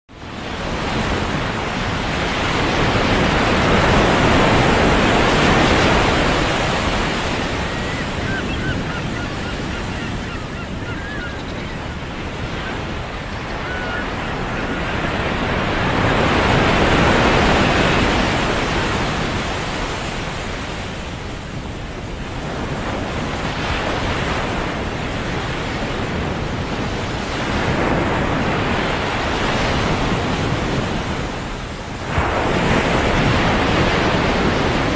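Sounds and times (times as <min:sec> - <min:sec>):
ocean surf breaking: 0:00.2 - 0:34.9
wind buffeting microphone: 0:00.6 - 0:34.9
faint high bird calls: 0:07.3 - 0:15.2.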